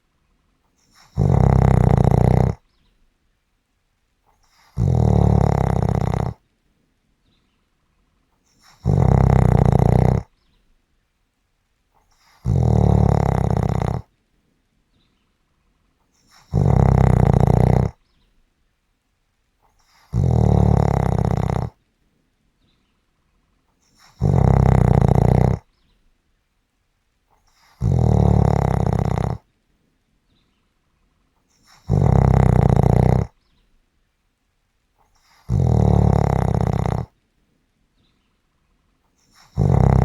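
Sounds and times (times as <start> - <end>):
person snoring: 1.0 - 2.6, 4.6 - 6.4, 8.6 - 10.3, 12.3 - 14.1, 16.4 - 18.0, 20.0 - 21.8, 24.0 - 25.7, 27.6 - 29.4, 31.7 - 33.4, 35.3 - 37.1, 39.4 - 40.0.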